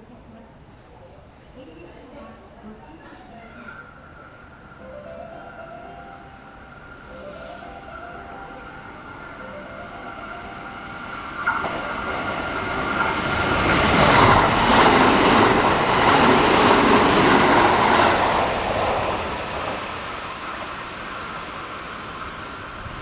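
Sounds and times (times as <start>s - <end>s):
train passing: 0.3s - 23.0s
wheels clattering over rail joints: 10.6s - 22.2s.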